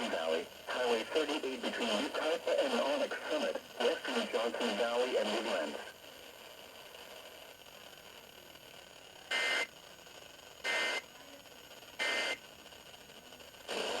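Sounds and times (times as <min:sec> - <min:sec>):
radio hiss: 0:00.0 - 0:14.0
harsh digital buzzes: 0:10.6 - 0:11.1, 0:11.9 - 0:12.5.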